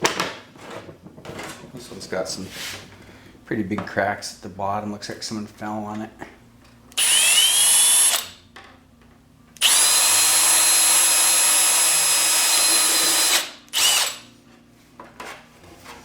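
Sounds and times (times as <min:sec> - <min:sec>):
power drill whining: 0:07.0 - 0:08.3, 0:09.6 - 0:14.3.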